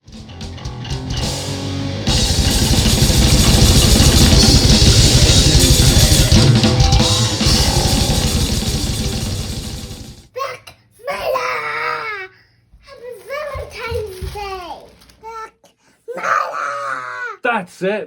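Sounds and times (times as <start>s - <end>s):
fast dense drumming: 0.0s - 10.3s
heavy metal music: 0.0s - 10.3s.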